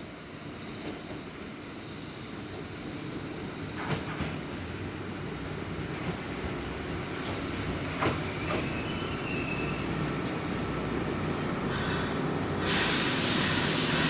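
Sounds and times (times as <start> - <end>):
electric train rumbling: 0.0 - 14.0
faint high squeal: 7.4 - 10.0
loud steady hiss: 10.7 - 14.0.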